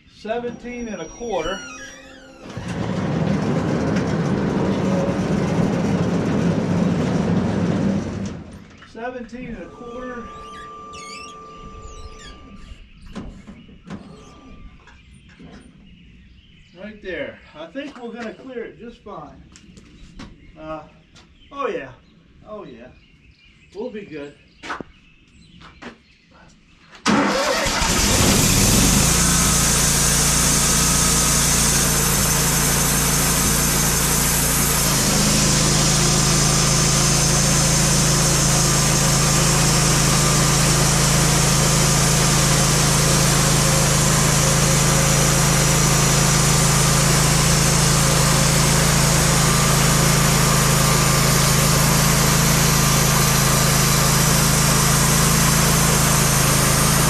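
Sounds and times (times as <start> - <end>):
gas engine running: 0.7 - 8.7, 27.1 - 57.0
saw blade cutting log: 28.1 - 57.0.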